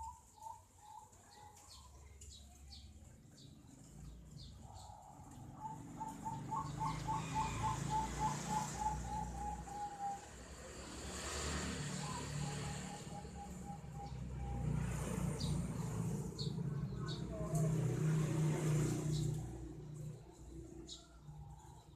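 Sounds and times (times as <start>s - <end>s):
dove cooing: 4.4s - 10.8s, 11.8s - 21.9s.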